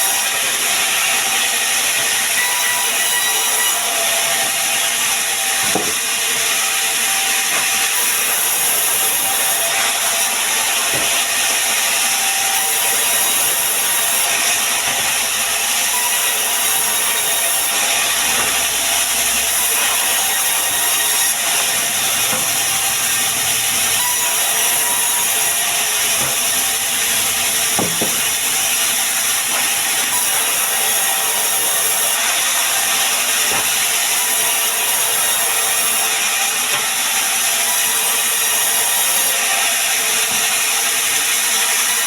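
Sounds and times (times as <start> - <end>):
saw blade cutting wood: 0.0 - 42.0.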